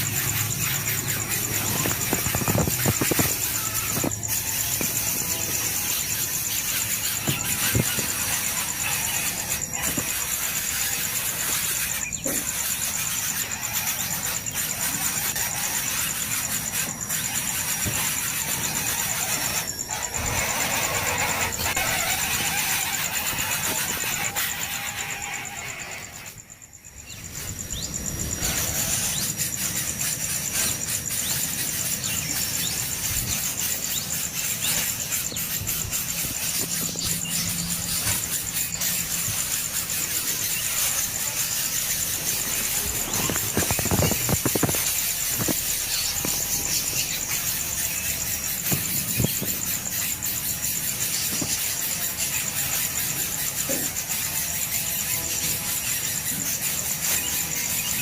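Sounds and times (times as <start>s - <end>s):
high insect buzz: 0.0s - 58.0s
nestling birds begging calls: 0.0s - 58.0s.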